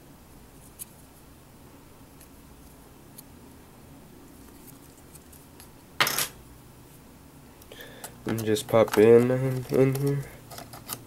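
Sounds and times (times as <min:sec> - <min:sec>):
clicks of small parts handled: 0:08.3 - 0:11.0.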